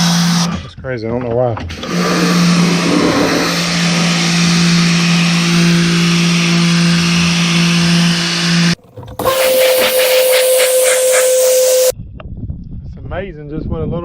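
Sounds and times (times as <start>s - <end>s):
pressure washer motor humming: 1.6s - 11.9s
spray hissing on boat hull: 9.2s - 11.9s.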